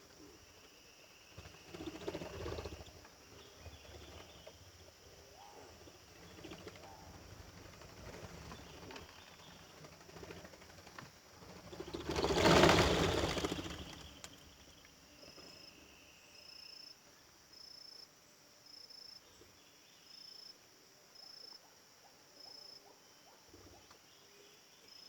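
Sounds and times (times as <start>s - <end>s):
birds wings flapping: 1.3s - 14.8s.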